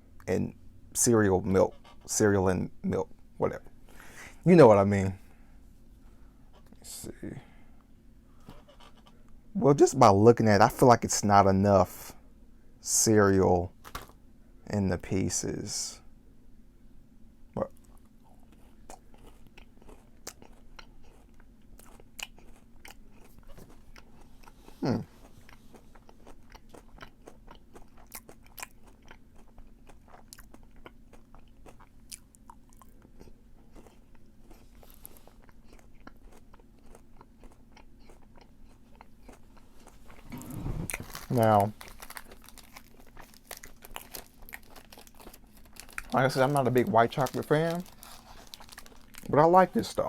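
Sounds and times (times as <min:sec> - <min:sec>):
chewing crunchy candy bar: 0:17.6 - 0:50.0.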